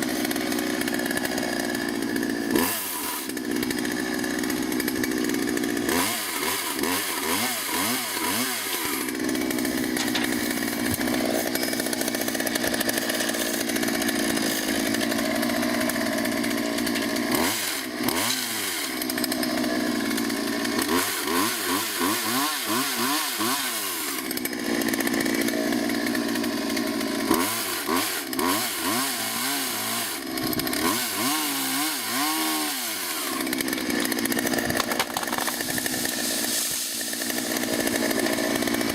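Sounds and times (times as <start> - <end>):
chainsaw cutting tree limb: 0.0 - 38.9.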